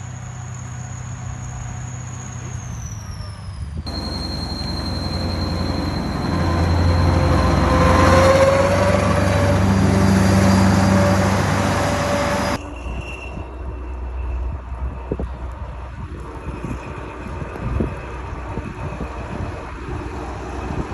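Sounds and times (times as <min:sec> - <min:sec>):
turbo whistle: 0:00.2 - 0:09.6
diesel tractor engine revving: 0:03.9 - 0:12.6.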